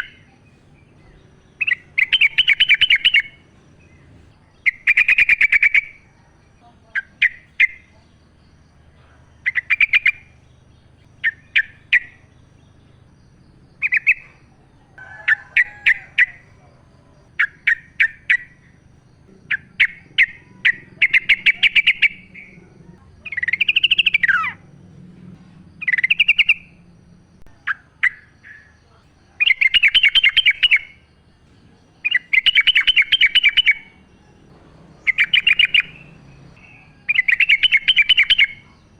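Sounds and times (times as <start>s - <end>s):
bulbul singing: 0.0s - 38.9s.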